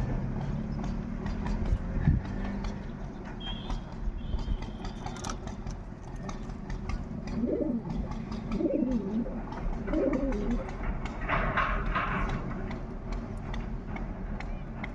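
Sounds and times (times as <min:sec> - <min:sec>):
pigeon cooing: 0:07.0 - 0:10.8.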